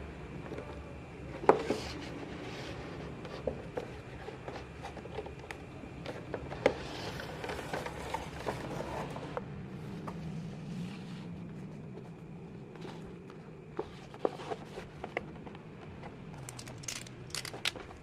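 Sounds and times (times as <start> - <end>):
plastic toy clicks and knocks: 16.4 - 18.0.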